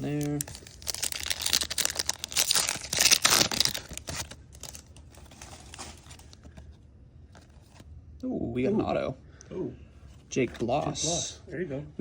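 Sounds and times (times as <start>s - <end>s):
cards being flipped through: 0.0s - 6.7s
plastic wrapper crinkling: 0.0s - 6.7s.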